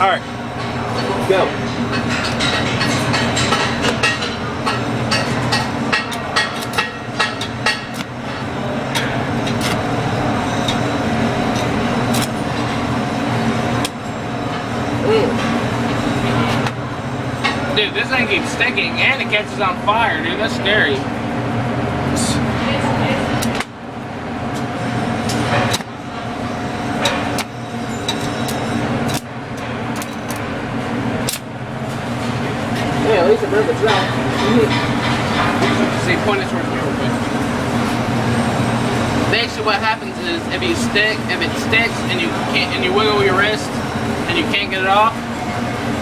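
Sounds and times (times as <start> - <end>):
welding arc pops: 31.2 - 31.5.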